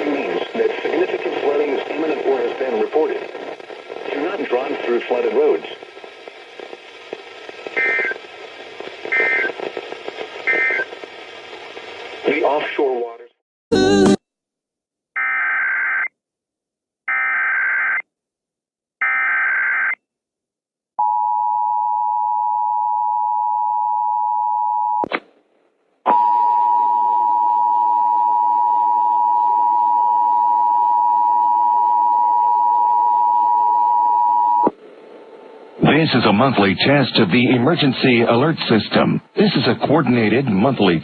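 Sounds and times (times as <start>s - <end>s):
digital data bursts: 7.7s - 8.2s, 9.0s - 9.7s, 10.4s - 11.0s.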